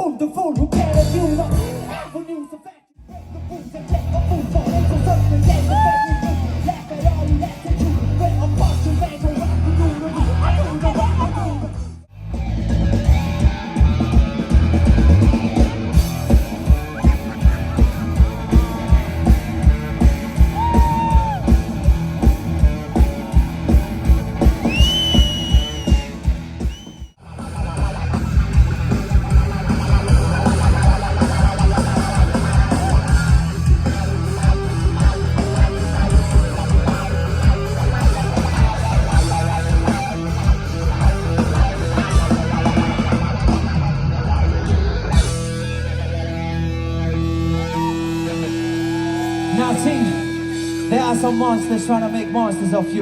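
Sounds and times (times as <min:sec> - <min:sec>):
loud rock music with guitar: 0:00.0 - 0:02.3, 0:03.0 - 0:53.0
heavy kick drum beat: 0:13.1 - 0:43.9.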